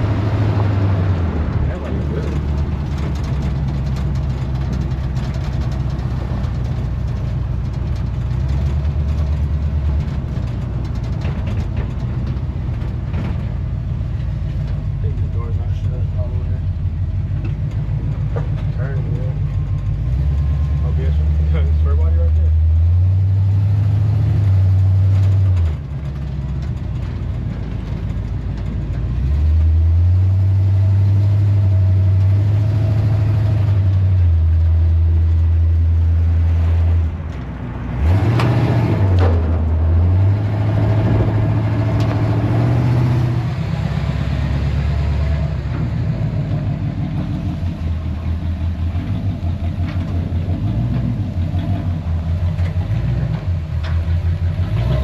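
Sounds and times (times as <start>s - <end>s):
pickup truck engine driving: 0.0s - 55.0s.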